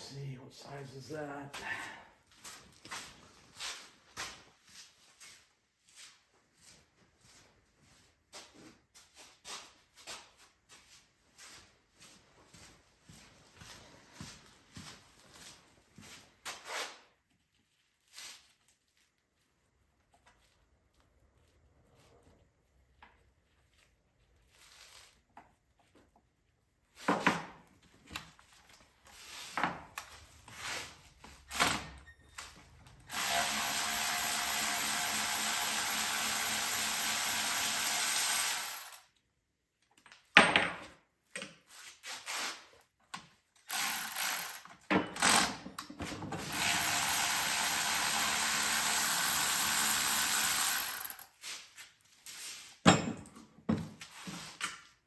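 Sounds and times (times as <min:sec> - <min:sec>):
power tool running: 0:33.1 - 0:39.0, 0:43.7 - 0:44.6, 0:46.4 - 0:51.3
tools and parts clinking: 0:52.8 - 0:54.0.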